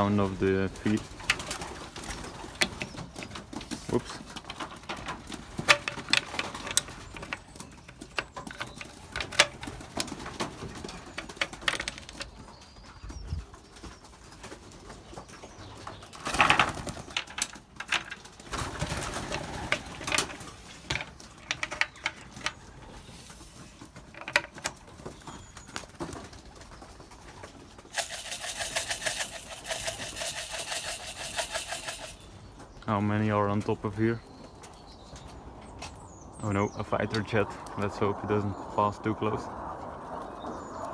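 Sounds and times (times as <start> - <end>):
pigeons cooing: 18.4 - 28.0
fast even rattle: 27.9 - 32.5
sharp clicks and knocks: 27.9 - 32.8.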